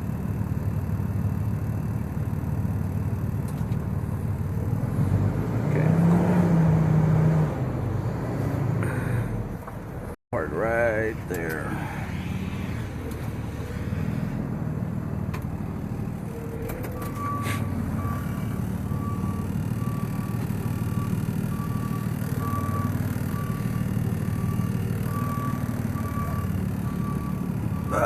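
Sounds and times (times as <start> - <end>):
truck engine running: 0.0 - 28.0
reversing alarm beeping: 16.3 - 28.0.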